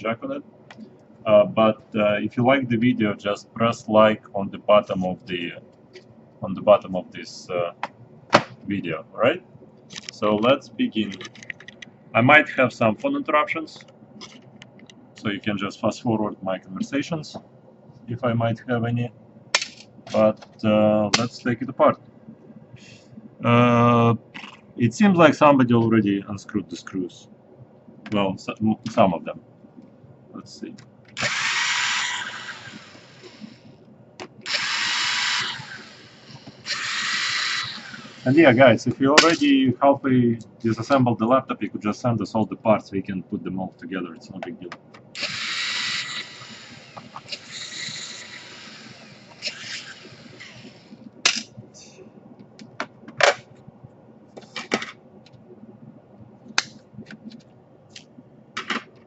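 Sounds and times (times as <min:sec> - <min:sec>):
power screwdriver whirring: 0:31.2 - 0:33.6, 0:34.5 - 0:38.4, 0:45.2 - 0:51.0.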